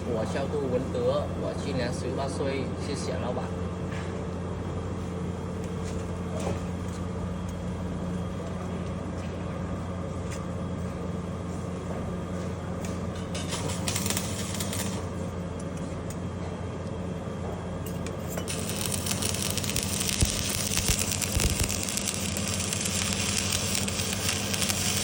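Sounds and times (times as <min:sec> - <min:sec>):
arc welding hum with crackles: 0:00.0 - 0:25.0
sizzling hiss: 0:18.3 - 0:25.0.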